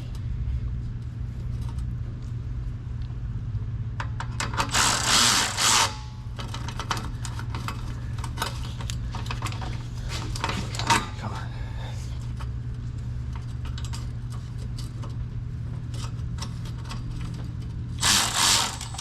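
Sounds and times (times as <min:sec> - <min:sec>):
steady low hum: 0:00.0 - 0:19.0
cordless ratchet running: 0:04.6 - 0:06.1, 0:18.0 - 0:19.0
metal tools clicking: 0:18.0 - 0:19.0.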